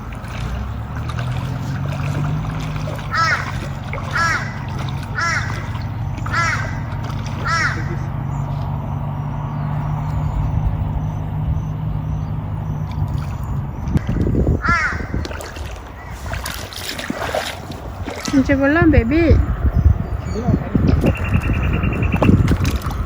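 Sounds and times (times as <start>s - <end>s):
steady low hum: 0.0s - 23.0s
crow cawing: 3.1s - 8.1s, 14.6s - 15.2s.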